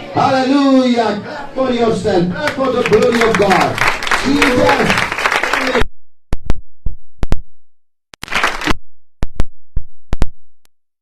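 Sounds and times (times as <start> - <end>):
handclaps: 2.5 - 5.8, 8.2 - 8.8.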